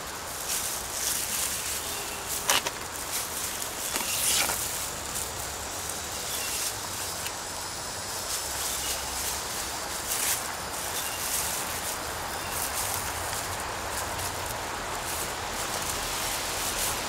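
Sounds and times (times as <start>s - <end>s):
hands digging through soil: 0.0s - 17.0s.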